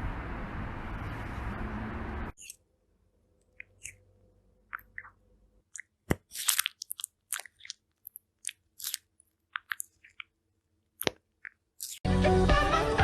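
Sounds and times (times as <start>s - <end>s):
crunchy chewing: 4.7s - 10.3s, 11.0s - 12.0s
music: 12.0s - 13.0s.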